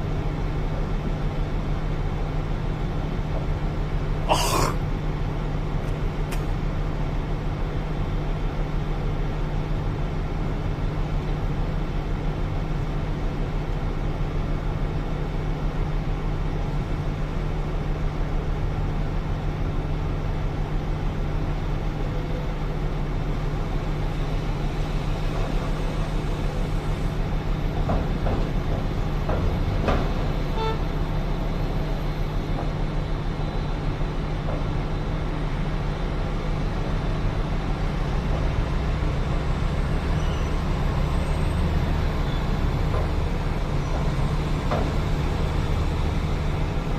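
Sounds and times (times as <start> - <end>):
heavy diesel machinery engine drone: 0.0 - 46.9
brief short tone: 40.2 - 40.6.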